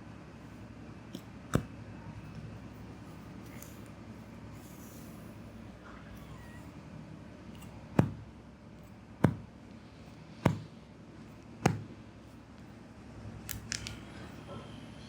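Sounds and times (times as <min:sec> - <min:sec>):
hand strikes on body: 0:08.0 - 0:08.2, 0:09.2 - 0:09.5, 0:10.4 - 0:10.7, 0:11.6 - 0:11.9.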